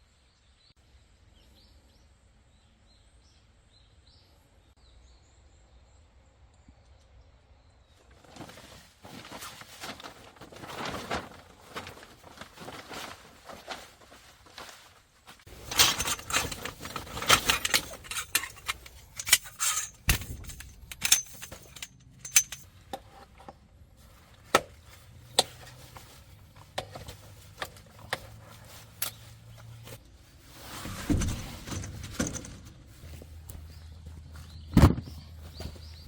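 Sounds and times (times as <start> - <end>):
metal gear clinking and rattling: 15.5 - 22.7, 30.9 - 33.6
dull thuds: 30.6 - 36.0.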